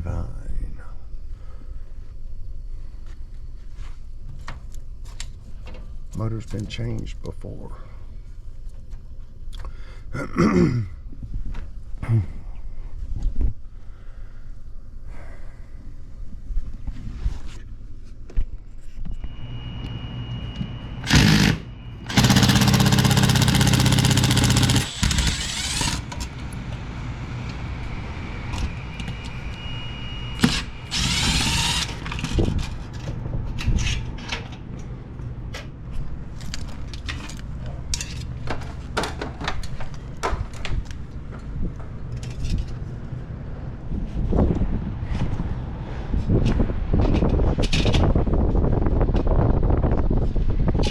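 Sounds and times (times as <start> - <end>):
steady low hum: 0.0 - 39.0
power drill whirring: 19.3 - 27.7, 28.3 - 32.7.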